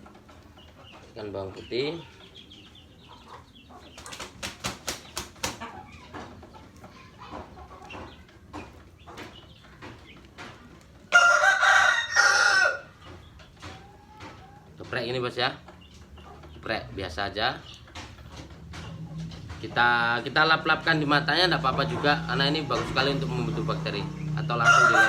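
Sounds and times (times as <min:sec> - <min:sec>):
rooster crowing: 0:11.1 - 0:12.9, 0:24.4 - 0:25.0.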